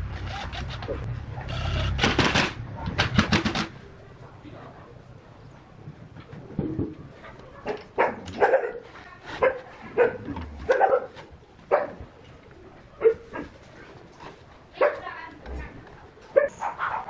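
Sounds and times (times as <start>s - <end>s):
dog barking: 7.5s - 8.8s, 9.4s - 12.0s, 13.0s - 13.5s, 14.8s - 15.1s, 16.4s - 17.0s.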